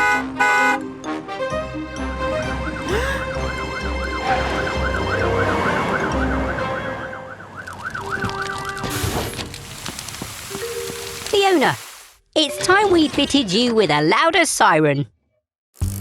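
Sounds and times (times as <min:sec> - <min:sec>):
background music: 0:00.0 - 0:09.1
cartoon siren wailing: 0:04.2 - 0:08.6.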